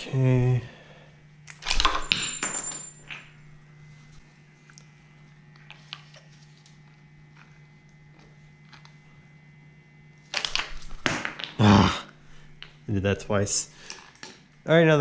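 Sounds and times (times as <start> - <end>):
steady low hum: 0.0 - 15.0
metal tools clinking and tapping: 13.8 - 14.6.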